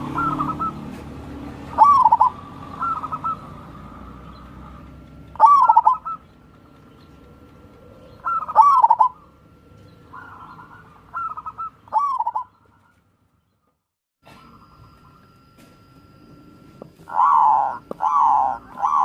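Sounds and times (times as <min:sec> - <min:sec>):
dove cooing: 0:00.0 - 0:06.3, 0:07.7 - 0:13.0, 0:17.0 - 0:19.0.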